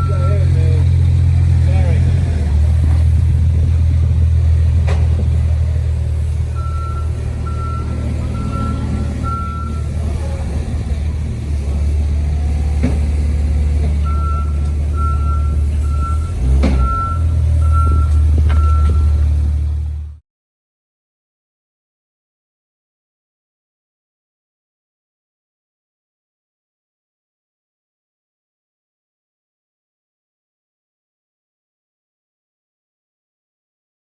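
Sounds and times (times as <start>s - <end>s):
reversing alarm beeping: 0.0s - 1.0s, 6.5s - 10.0s, 14.0s - 19.4s
heavy low rumble: 0.0s - 20.2s.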